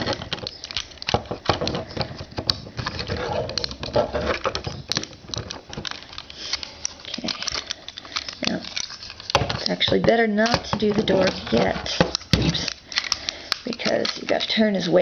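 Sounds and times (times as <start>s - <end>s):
plastic parts clicking and rattling: 0.0s - 15.0s.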